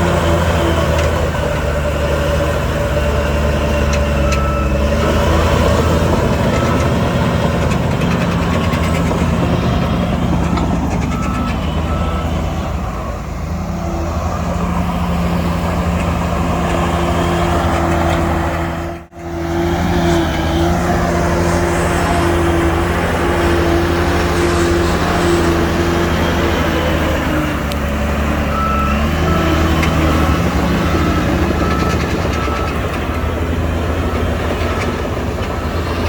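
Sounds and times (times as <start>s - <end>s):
diesel machinery engine drone: 0.0s - 36.0s
reversing beep: 3.1s - 13.3s, 28.4s - 33.4s.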